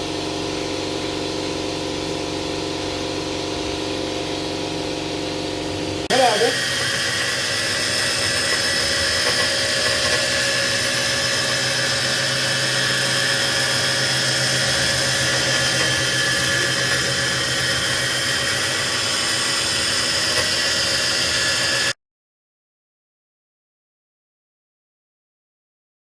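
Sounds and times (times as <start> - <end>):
cnc machine hissing and whining: 4.9 - 22.0.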